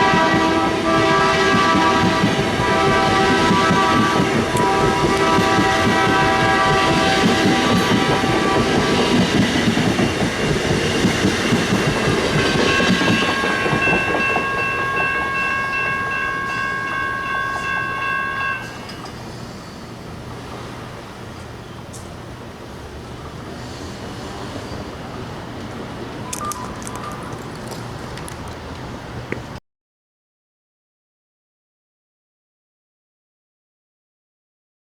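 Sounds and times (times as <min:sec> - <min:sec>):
locomotive air horn chord: 0:00.0 - 0:09.3
train rolling past: 0:00.0 - 0:29.6.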